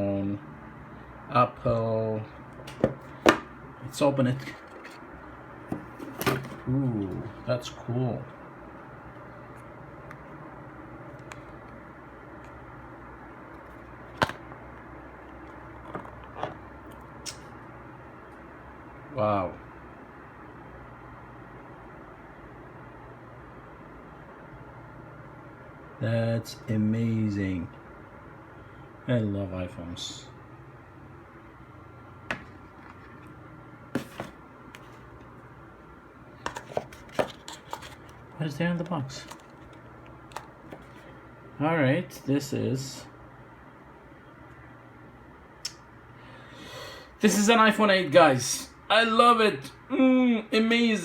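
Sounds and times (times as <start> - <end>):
low background hum: 0.0 - 51.0
packaging being handled: 36.5 - 41.1.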